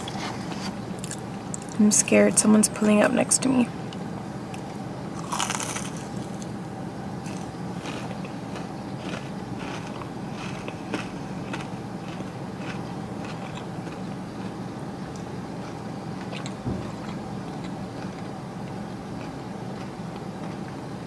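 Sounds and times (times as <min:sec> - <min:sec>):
chewing crunchy food: 0:00.0 - 0:01.8, 0:03.9 - 0:20.9
steady low hum: 0:00.0 - 0:21.0
low thump: 0:16.6 - 0:17.2.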